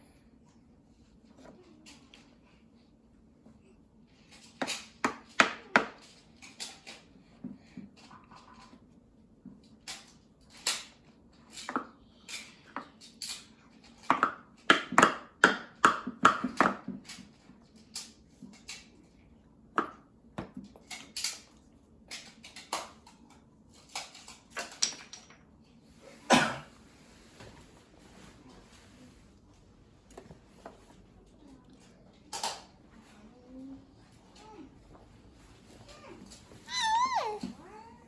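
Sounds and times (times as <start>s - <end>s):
faint low hum: 25.5s - 38.0s.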